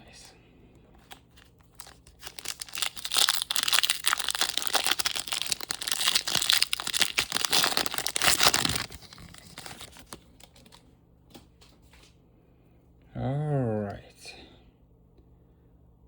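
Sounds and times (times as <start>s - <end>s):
foil wrapper tearing and crinkling: 1.0s - 10.8s.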